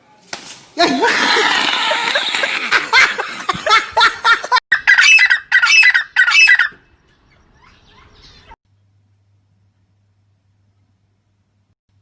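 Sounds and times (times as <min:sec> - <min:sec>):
bird squawking: 0:04.7 - 0:08.6.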